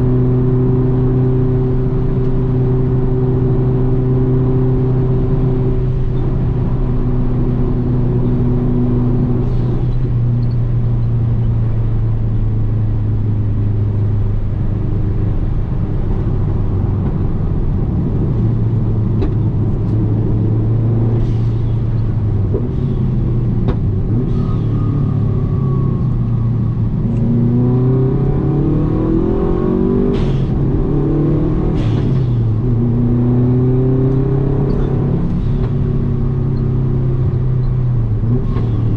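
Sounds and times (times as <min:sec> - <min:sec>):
car engine revving: 0:14.0 - 0:38.9.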